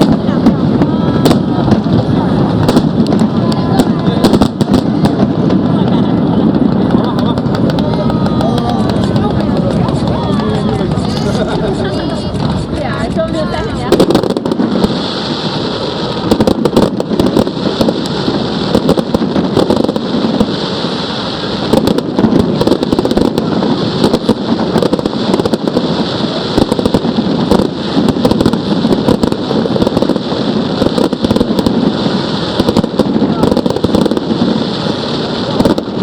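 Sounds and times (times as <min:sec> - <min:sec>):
fireworks crackling: 0:00.0 - 0:36.0
fireworks shells bursting: 0:06.5 - 0:23.4.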